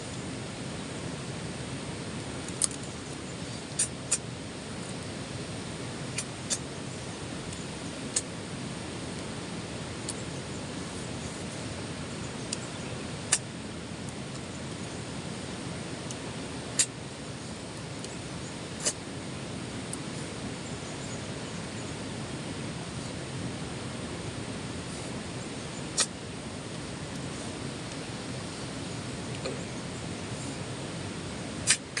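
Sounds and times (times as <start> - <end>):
short sharp clicks: 31.6 - 32.0.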